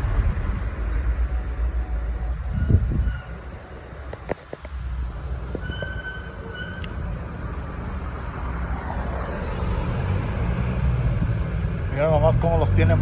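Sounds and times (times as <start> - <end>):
road traffic rumble: 0.0 - 13.0
short high squeal: 2.5 - 3.6, 5.5 - 6.9.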